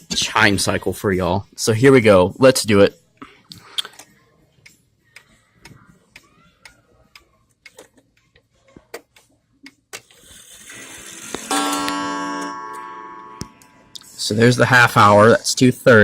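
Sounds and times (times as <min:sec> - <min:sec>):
wall clock ticking: 0:04.0 - 0:16.0
clock chime train whirring: 0:10.2 - 0:14.8
coil gong ringing: 0:10.7 - 0:14.0.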